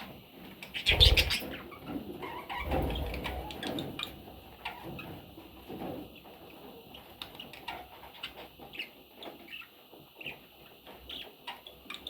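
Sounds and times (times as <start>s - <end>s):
budgerigars chirping: 0.8s - 1.6s.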